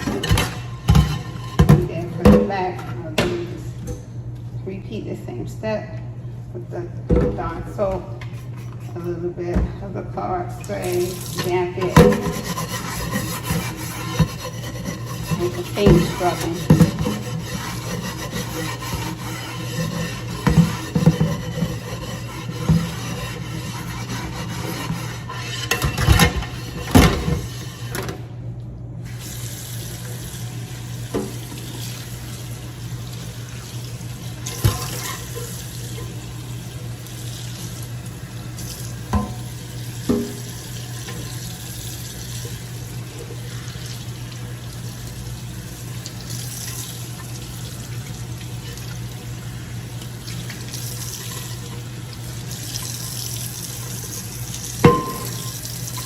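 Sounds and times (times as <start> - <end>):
tap water running into sink: 29.2 - 56.0.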